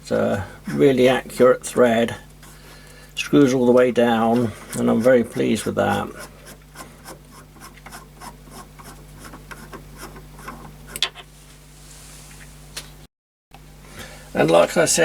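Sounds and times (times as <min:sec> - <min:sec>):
faint steady hum: 0:00.0 - 0:15.0
screw thread scraping clicks: 0:04.4 - 0:11.1.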